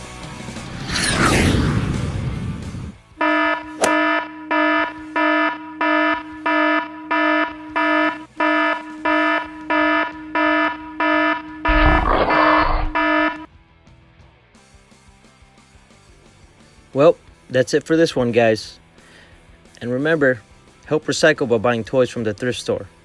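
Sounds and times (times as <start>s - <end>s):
electronic warning beeps: 3.2s - 13.5s.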